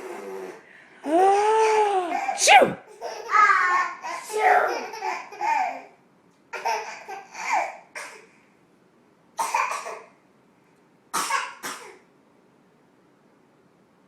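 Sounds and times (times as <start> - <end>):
baby laughing hysterically: 3.0 - 5.9, 6.6 - 7.7.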